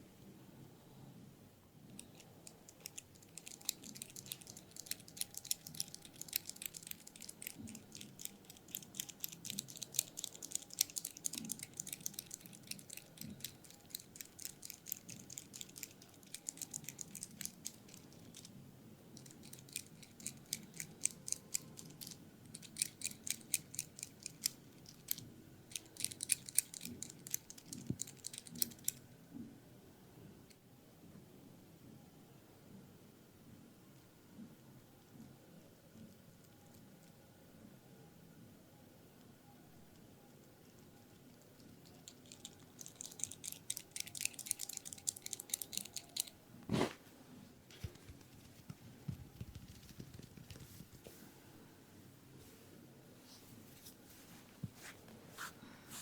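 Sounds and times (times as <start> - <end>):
hands clicking over hair: 47.8 - 51.1.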